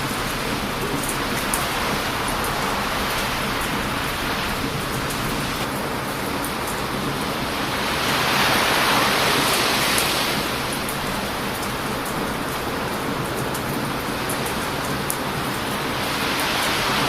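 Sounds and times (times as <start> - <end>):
surf breaking on a beach: 0.0 - 5.7, 6.8 - 17.0
campfire crackling: 0.0 - 17.0.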